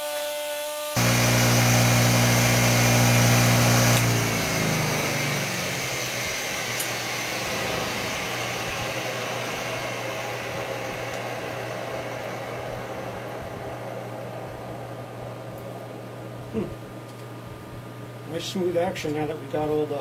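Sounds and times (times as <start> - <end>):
power tool motor winding down: 0.0 - 14.9
constant low hum: 5.2 - 20.0.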